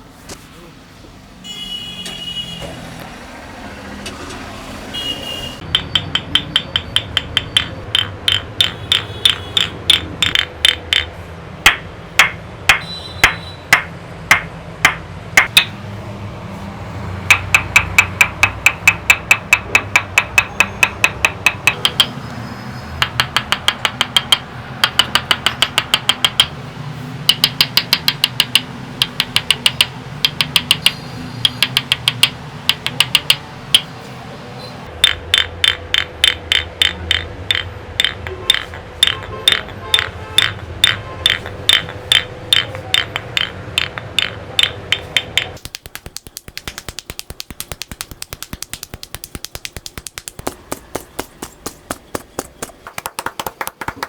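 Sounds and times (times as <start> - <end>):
hands slapping head: 45.0 - 54.0.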